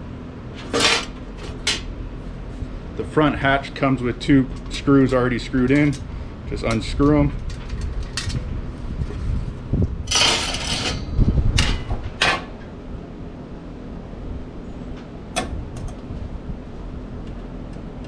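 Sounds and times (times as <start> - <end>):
metal parts scraping rustle: 0.6 - 1.6, 10.1 - 11.1.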